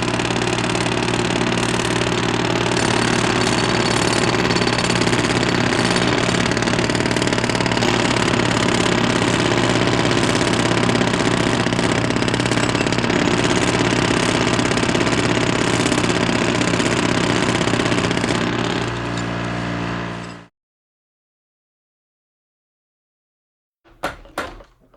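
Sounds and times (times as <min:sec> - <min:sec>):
engine running: 0:05.4 - 0:20.5.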